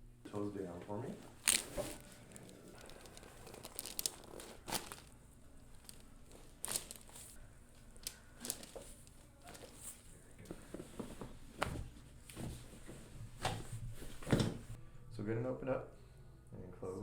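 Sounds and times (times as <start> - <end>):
rustling on treatment table: 1.2 - 5.1, 5.8 - 14.8.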